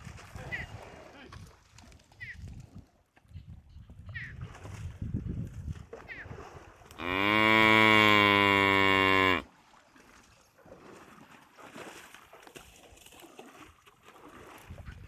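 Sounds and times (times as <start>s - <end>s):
buffalo mooing: 7.0s - 9.5s.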